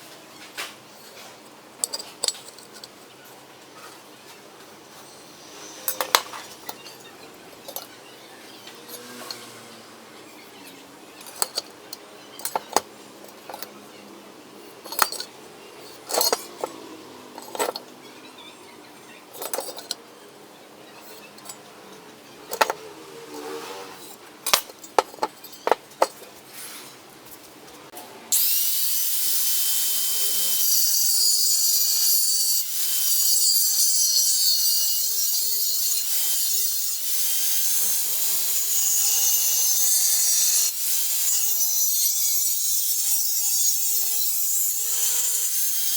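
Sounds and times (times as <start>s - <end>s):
saw rasping through steel: 5.2s - 7.1s, 8.5s - 10.1s, 22.5s - 25.8s, 28.3s - 45.9s.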